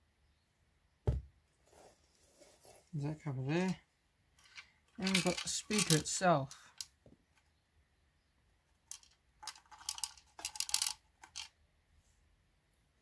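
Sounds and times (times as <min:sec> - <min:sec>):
metal screws clinking and rattling: 0:04.4 - 0:07.0, 0:08.9 - 0:11.5.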